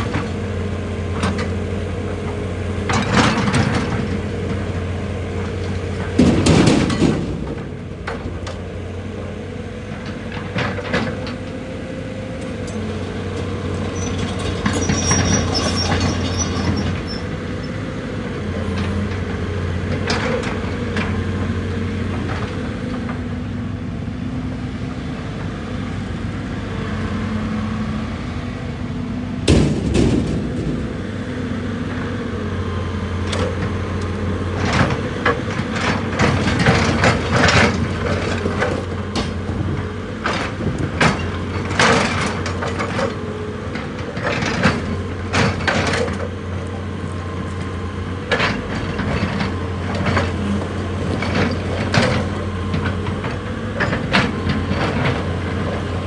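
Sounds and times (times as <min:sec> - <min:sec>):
machine clanks and knocks: 0:00.0 - 0:04.6, 0:05.4 - 0:08.8, 0:09.8 - 0:17.2, 0:29.5 - 0:31.3, 0:33.2 - 0:56.0
excavator diesel engine running: 0:00.0 - 0:56.0.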